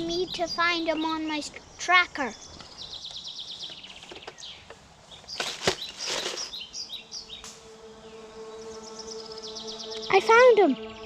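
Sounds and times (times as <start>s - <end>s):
woodland birds singing: 0.0s - 11.0s
rustles and clicks: 3.7s - 6.6s
rapid high bird trill: 5.3s - 11.0s
steady low hum: 6.5s - 11.0s.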